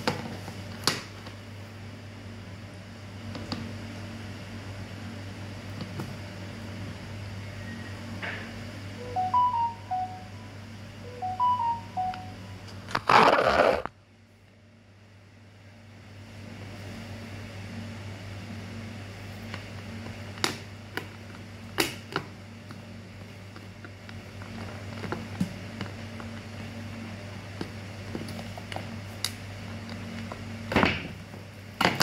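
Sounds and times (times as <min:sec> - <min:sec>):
steady low hum: 0:01.3 - 0:19.9
electronic beep tunes: 0:09.0 - 0:12.6.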